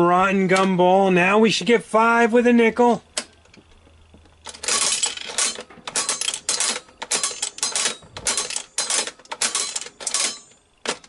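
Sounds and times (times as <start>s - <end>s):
gumball machine crank ratcheting: 4.4s - 11.0s.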